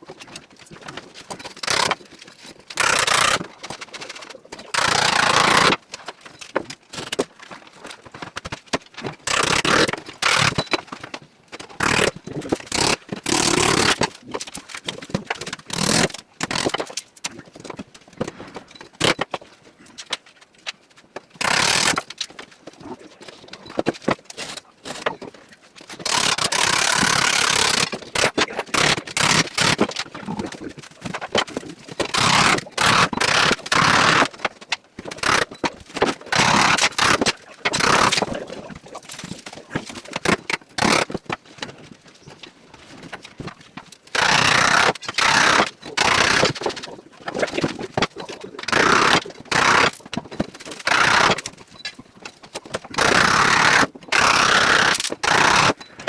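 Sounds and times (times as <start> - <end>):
carpentry scraping and tool noise: 0.0 - 56.0.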